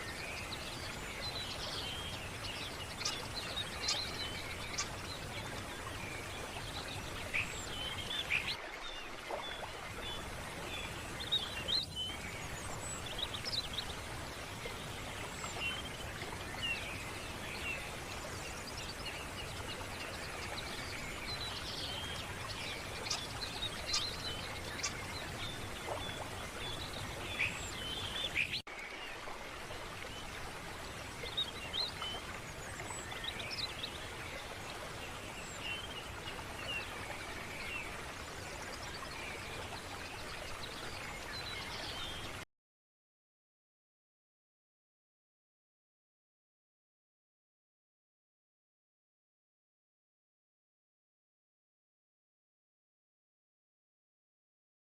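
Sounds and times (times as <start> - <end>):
small birds chirping: 0.0 - 8.6, 15.5 - 28.6.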